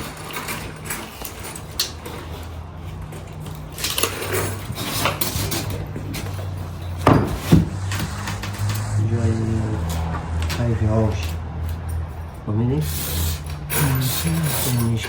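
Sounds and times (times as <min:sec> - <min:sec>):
steady low hum: 0:05.8 - 0:13.8.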